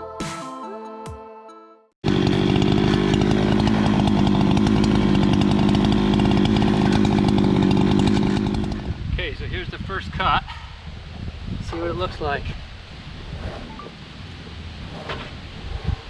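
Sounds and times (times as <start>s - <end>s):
electronic music: 0.0s - 1.6s
chainsaw at full throttle: 2.0s - 9.0s.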